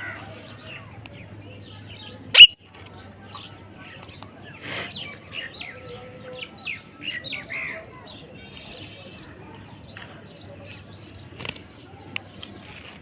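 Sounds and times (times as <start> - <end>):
parrot chirping and whistling: 2.4 - 2.6.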